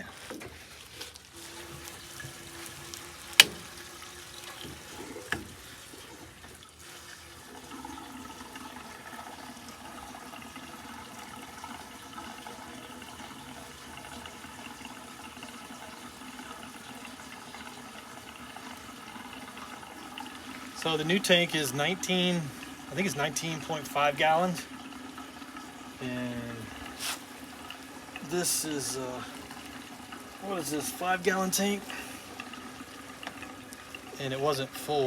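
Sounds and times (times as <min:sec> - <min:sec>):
gasoline pouring into tank: 0:00.0 - 0:35.0.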